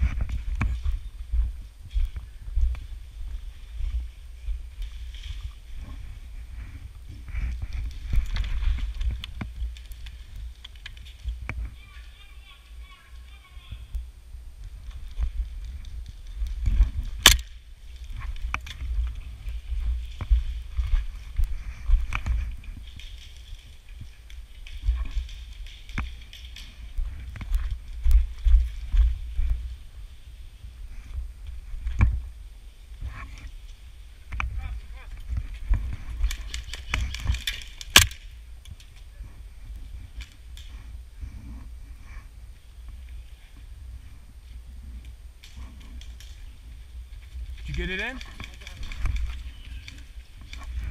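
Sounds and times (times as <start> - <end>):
wind on microphone: 0.0 - 10.6, 13.7 - 23.0, 23.7 - 50.9
airsoft gear clicking: 15.6 - 17.5, 36.2 - 39.0
loud crack: 17.2 - 17.6, 36.3 - 38.3.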